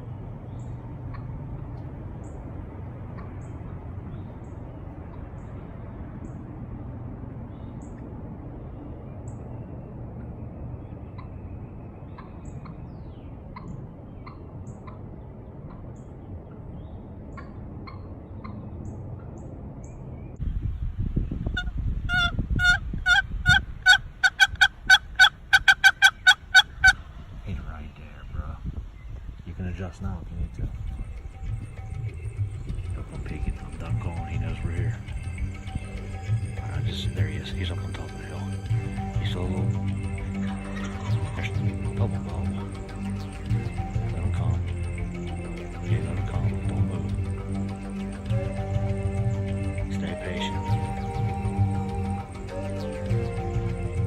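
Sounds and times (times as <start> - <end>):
low outdoor background: 0.0 - 54.0
turkey call yelps: 21.6 - 27.3, 40.0 - 42.0.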